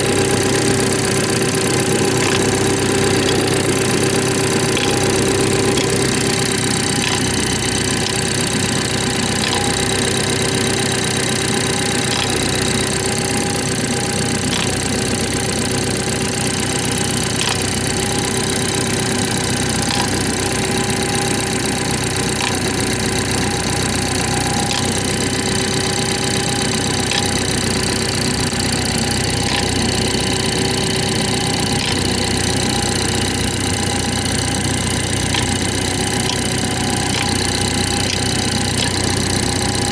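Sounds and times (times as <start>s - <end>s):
car engine idling: 0.0s - 39.9s
faint repeating click: 0.8s - 13.0s, 14.5s - 15.0s.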